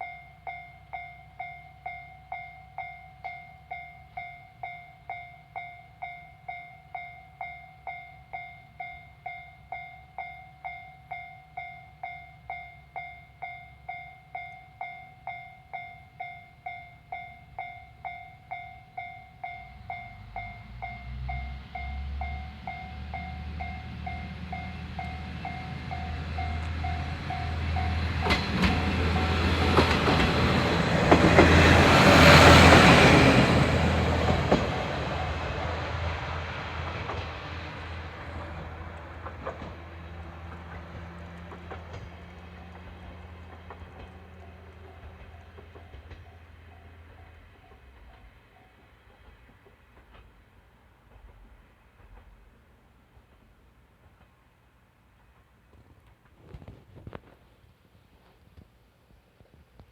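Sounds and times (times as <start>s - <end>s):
level crossing alarm dinging: 0.0s - 30.6s
diesel train engine rumble: 0.0s - 56.5s
train clattering over rails: 19.0s - 54.4s.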